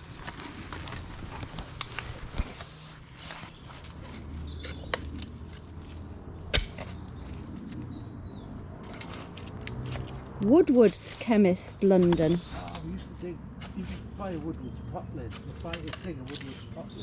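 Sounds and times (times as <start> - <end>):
bird chirp: 2.7 - 10.4, 11.5 - 13.0, 16.2 - 17.0.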